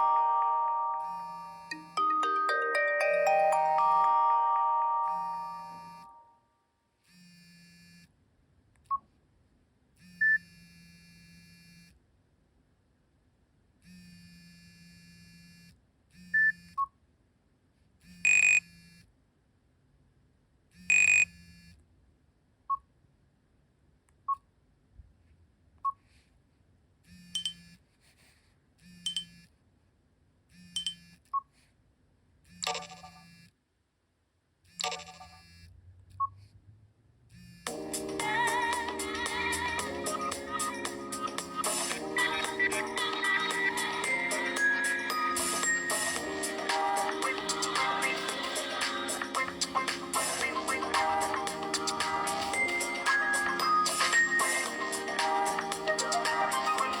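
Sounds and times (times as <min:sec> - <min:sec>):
mallet-like chime: 0:00.0 - 0:06.2, 0:39.8 - 0:48.0, 0:52.1 - 0:57.0
electronic blips: 0:18.2 - 0:18.7, 0:20.8 - 0:21.4, 0:27.3 - 0:27.8, 0:29.0 - 0:29.4, 0:30.6 - 0:31.2, 0:32.5 - 0:33.4, 0:34.8 - 0:36.4
short beeps: 0:18.3 - 0:18.6, 0:20.9 - 0:21.3, 0:27.4 - 0:27.7, 0:29.1 - 0:29.4, 0:30.7 - 0:31.1.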